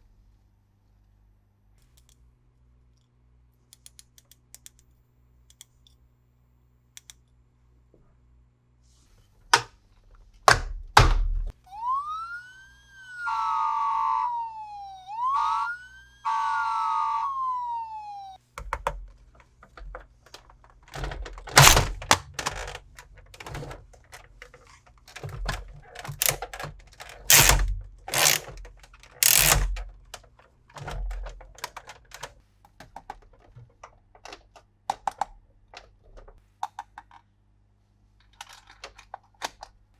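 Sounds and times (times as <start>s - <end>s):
plastic toy knocks and clicks: 10.5s - 11.5s, 19.8s - 22.8s, 25.2s - 29.8s
toy electronic siren wailing: 11.6s - 18.4s, 27.3s - 28.4s, 29.2s - 29.7s.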